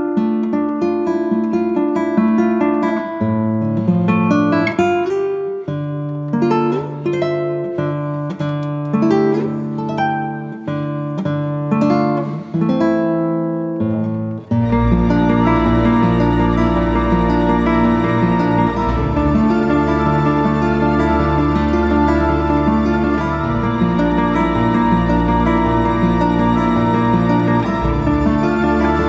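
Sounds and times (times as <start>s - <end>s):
acoustic guitar picking: 0.0s - 29.0s.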